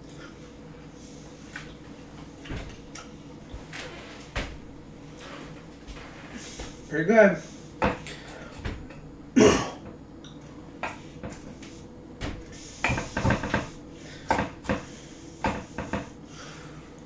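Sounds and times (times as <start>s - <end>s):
kitchen utensils knocking on counter: 12.8s - 13.7s.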